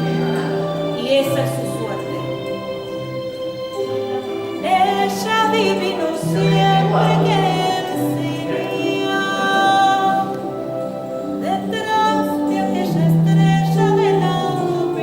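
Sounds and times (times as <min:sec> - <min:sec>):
sustained accompaniment: 0:00.0 - 0:15.0
person singing long held notes: 0:03.8 - 0:15.0.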